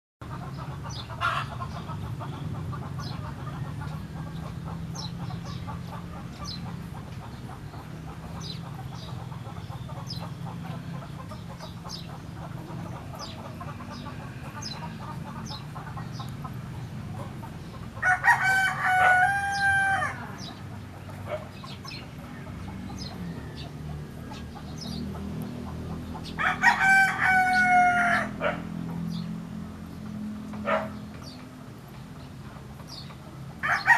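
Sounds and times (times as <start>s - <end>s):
rooster crowing: 18.0s - 20.4s, 26.3s - 28.6s, 33.6s - 33.9s.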